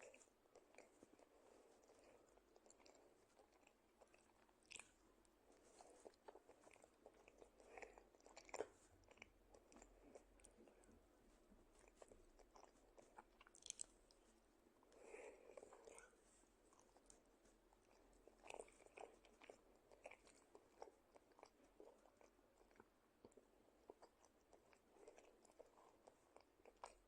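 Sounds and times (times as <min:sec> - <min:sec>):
sticky chewing mouth smacks: 0:11.8 - 0:14.2.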